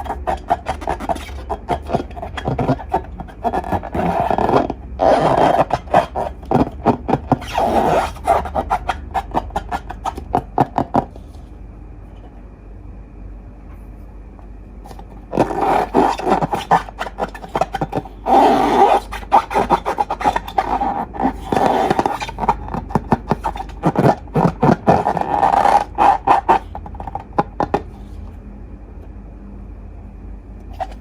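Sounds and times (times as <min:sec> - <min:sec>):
slime crackling and scraping: 0:00.0 - 0:11.4, 0:14.9 - 0:28.2.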